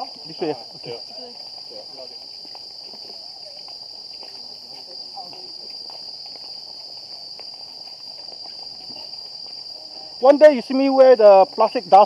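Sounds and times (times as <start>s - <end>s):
faint voices: 0.0s - 7.2s
insect chorus buzzing: 0.0s - 12.0s.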